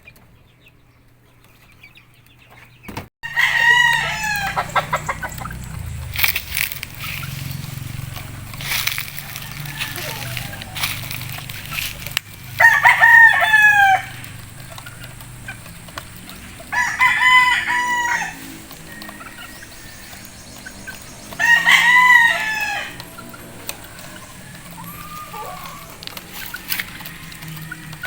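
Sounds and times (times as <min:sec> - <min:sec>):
rooster crowing: 0:03.2 - 0:14.4, 0:16.6 - 0:20.4, 0:21.0 - 0:28.0.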